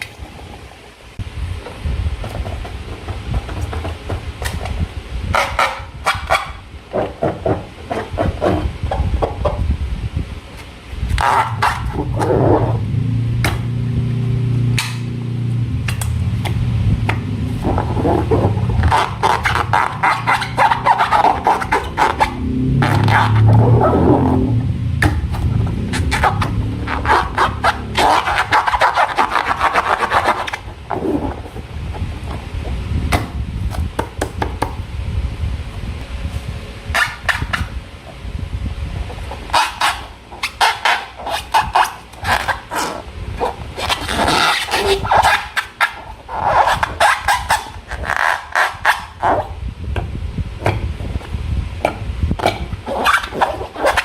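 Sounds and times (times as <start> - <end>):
steady low hum: 0.0 - 54.0
low rubbing sound: 2.2 - 9.7, 10.4 - 33.0, 39.0 - 49.6.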